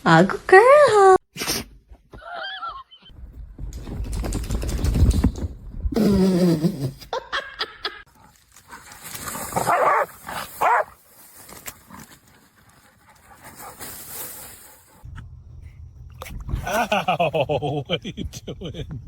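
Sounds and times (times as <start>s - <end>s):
dog calling: 9.6s - 10.9s.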